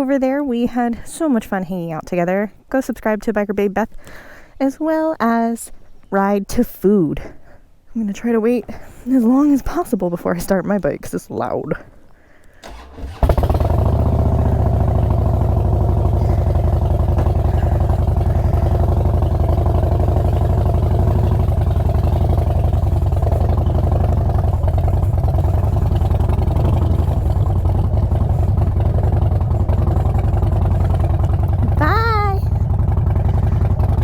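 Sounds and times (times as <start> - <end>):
motorcycle engine starting and idling: 12.6 - 34.0.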